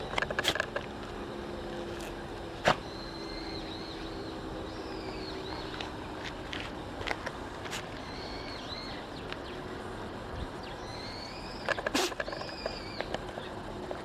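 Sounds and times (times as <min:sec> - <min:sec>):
steady low background noise: 0:00.0 - 0:14.0
person sneezing: 0:11.9 - 0:12.2.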